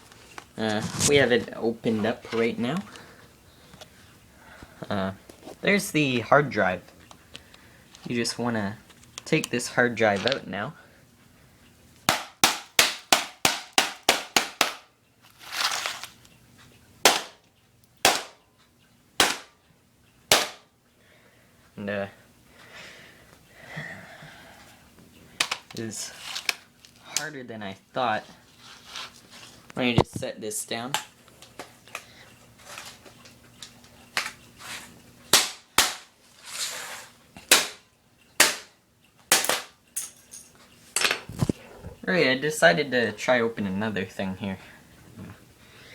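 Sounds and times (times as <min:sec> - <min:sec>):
hammer striking laptop: 0:12.1 - 0:14.9, 0:17.1 - 0:17.4, 0:18.0 - 0:18.4, 0:19.2 - 0:19.5, 0:20.3 - 0:20.6, 0:35.3 - 0:36.1, 0:37.5 - 0:37.8.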